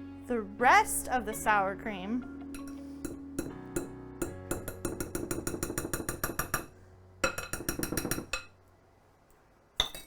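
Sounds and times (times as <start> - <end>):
spoon scraping a bowl: 2.6 - 3.5.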